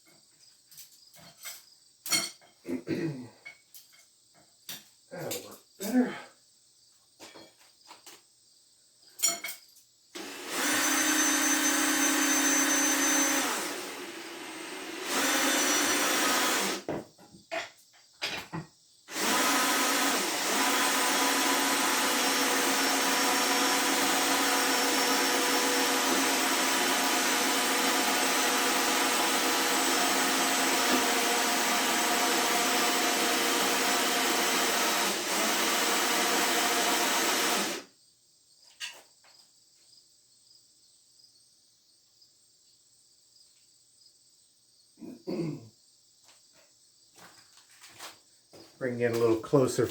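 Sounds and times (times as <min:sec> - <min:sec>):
power tool motor humming: 0:10.2 - 0:16.9, 0:19.1 - 0:37.9.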